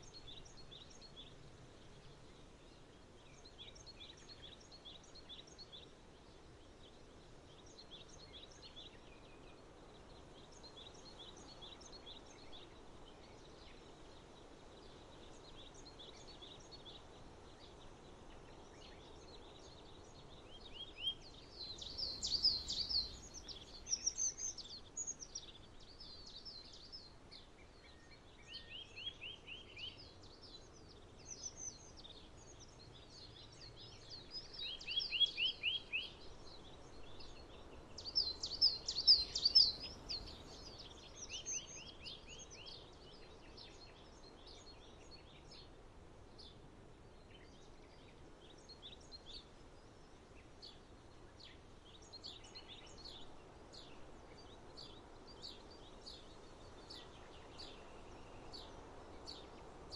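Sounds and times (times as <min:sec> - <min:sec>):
small songbirds singing: 0:00.0 - 0:59.9.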